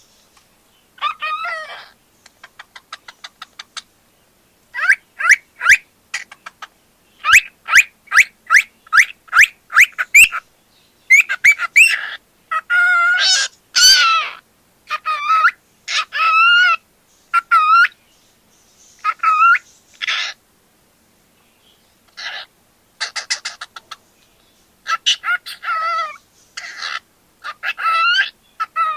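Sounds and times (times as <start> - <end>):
cockatiel chirping and whistling: 7.2 - 10.4, 11.1 - 14.2.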